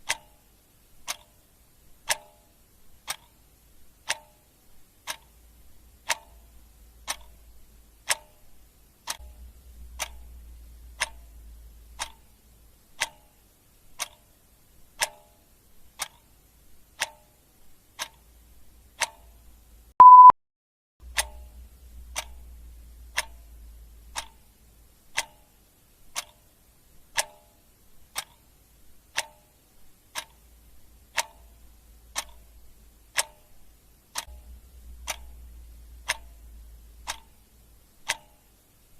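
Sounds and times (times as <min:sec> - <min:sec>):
clock ticking: 0:00.0 - 0:20.3, 0:21.0 - 0:38.9
short high beep: 0:20.0 - 0:20.4.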